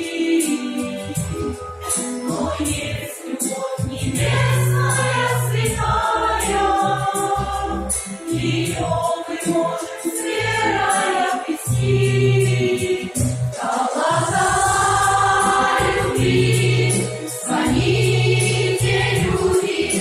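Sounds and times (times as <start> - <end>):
choir singing with instruments: 0.0 - 20.0
steady bass line: 14.4 - 20.0.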